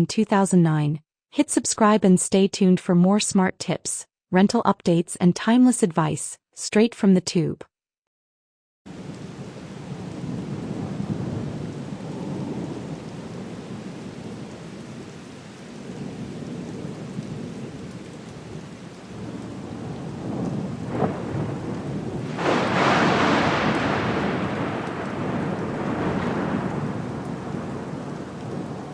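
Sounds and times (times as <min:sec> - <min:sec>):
low rolling thunder: 0:08.9 - 0:28.9
steady rain: 0:08.9 - 0:28.9
sharp thunder crack: 0:19.2 - 0:28.9.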